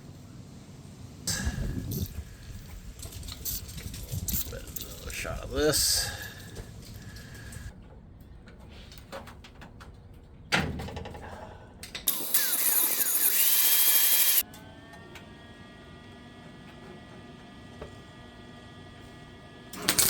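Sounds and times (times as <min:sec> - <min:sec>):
power tool hiss and whine: 0:12.1 - 0:14.5.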